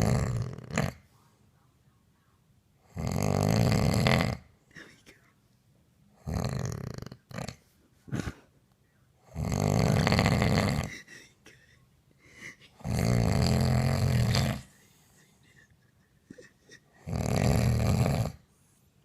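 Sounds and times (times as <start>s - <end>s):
man snoring loudly: 0.0s - 1.0s, 2.9s - 4.4s, 6.2s - 7.6s, 9.3s - 10.9s, 12.8s - 14.7s, 17.0s - 18.4s.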